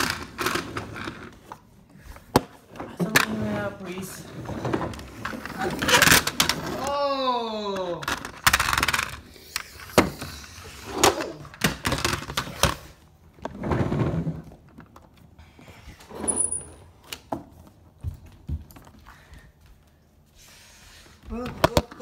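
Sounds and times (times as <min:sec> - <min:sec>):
toys knocking and clattering: 0:07.9 - 0:12.8.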